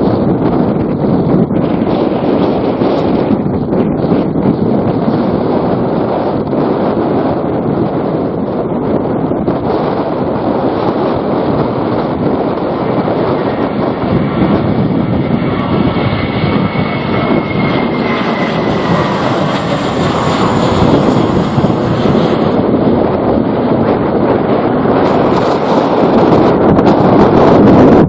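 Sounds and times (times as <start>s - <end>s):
jet engines roaring and whining: 0.0s - 28.0s
wind buffeting microphone: 0.0s - 28.0s.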